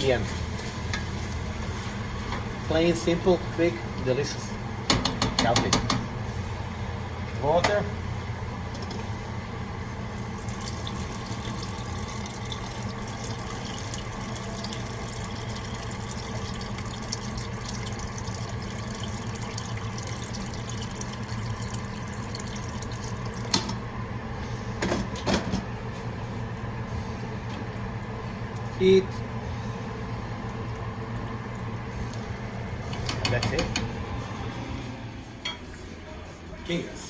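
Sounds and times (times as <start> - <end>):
low steady hum: 0.0 - 37.0
tap water running into pot: 10.1 - 24.0, 30.5 - 33.9.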